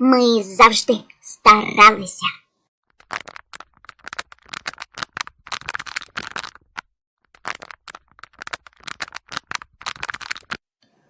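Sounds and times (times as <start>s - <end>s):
paper cups crackling: 3.0s - 10.6s.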